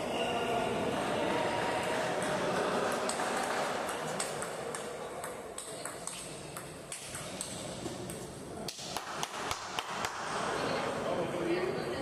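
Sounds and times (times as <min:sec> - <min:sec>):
large hall background noise: 0:00.0 - 0:12.0
table tennis balls clicking: 0:03.9 - 0:08.3.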